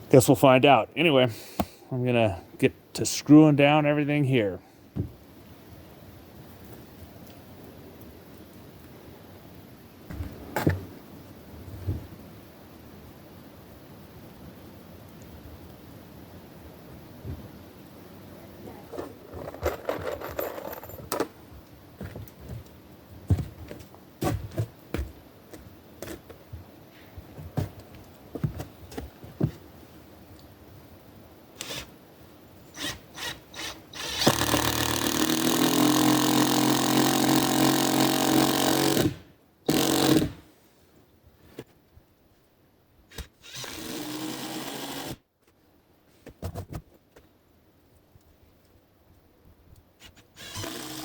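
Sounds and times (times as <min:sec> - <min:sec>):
power drill driving screws: 0:31.6 - 0:31.9, 0:32.8 - 0:40.4, 0:43.1 - 0:45.2, 0:50.1 - 0:51.0.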